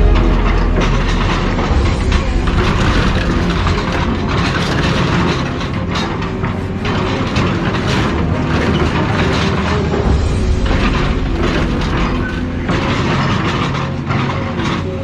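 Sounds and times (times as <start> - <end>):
low engine drone: 0.0 - 15.0
metal knocking and crunching: 0.0 - 15.0.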